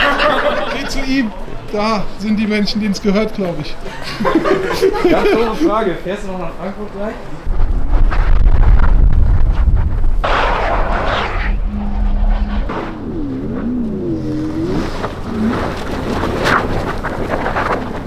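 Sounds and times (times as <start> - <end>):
car engine and exhaust rumbling: 7.4 - 18.0
wavering sliding tones: 10.2 - 16.2.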